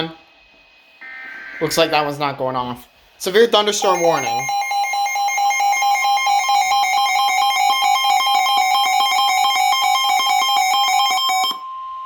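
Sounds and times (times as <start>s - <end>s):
rapid warbling electronic beeping: 3.8s - 6.8s.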